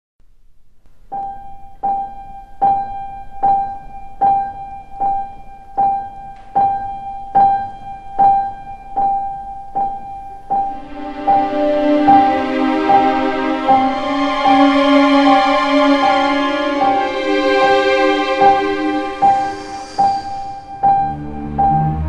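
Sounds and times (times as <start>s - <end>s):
high keyboard note repeated: 10.7s - 22.0s.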